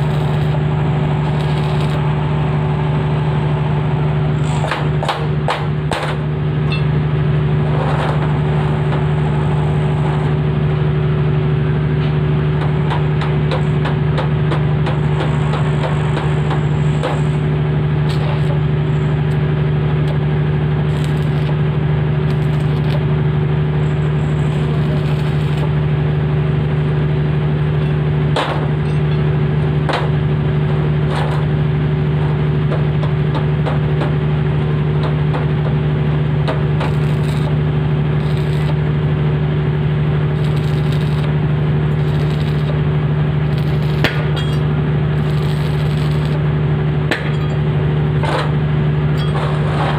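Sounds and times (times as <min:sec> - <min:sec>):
welding crackles and clicks: 0:00.0 - 0:02.1, 0:12.0 - 0:25.9, 0:35.0 - 0:37.6, 0:38.2 - 0:39.0, 0:40.3 - 0:46.5
arc welding hum: 0:00.0 - 0:49.9.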